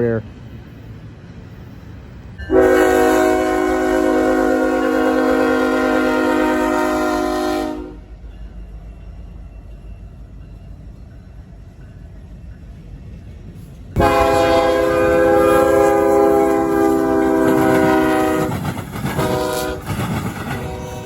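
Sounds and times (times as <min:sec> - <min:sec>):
low rumble of passing train: 0:00.0 - 0:21.0
locomotive air horn blasts: 0:02.5 - 0:08.1, 0:14.0 - 0:18.6, 0:19.2 - 0:20.0, 0:20.6 - 0:21.0.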